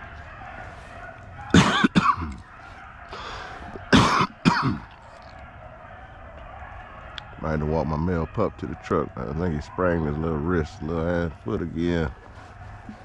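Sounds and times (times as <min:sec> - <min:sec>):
man coughing: 0:01.6 - 0:02.4, 0:03.2 - 0:04.9.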